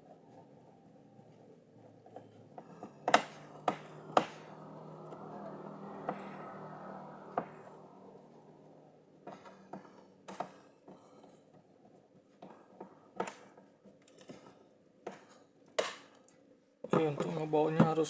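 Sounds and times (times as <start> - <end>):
faint steady hum: 0.0 - 10.4.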